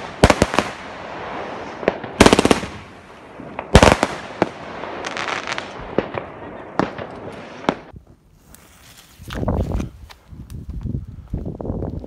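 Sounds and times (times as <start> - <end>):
distant fireworks din: 0.0 - 8.0
fireworks crackle: 0.0 - 9.4.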